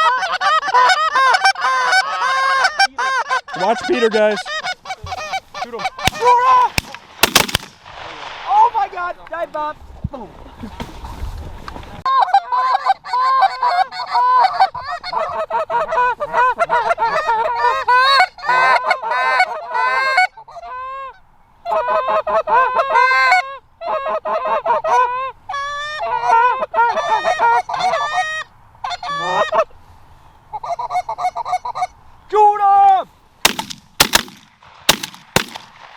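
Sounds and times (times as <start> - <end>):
goose honks and clucks: 0.0 - 6.4, 16.6 - 29.7, 30.5 - 32.0.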